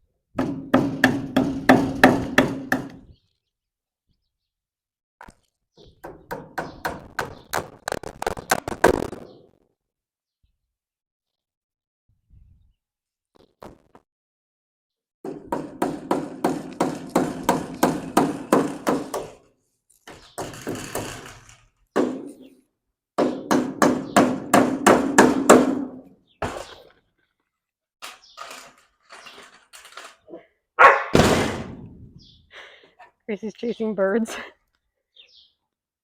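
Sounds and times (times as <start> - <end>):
hammer striking nails: 0.4 - 3.1, 6.0 - 7.4, 15.2 - 19.4, 20.1 - 22.4, 23.2 - 26.8
loud bang: 31.1 - 32.2.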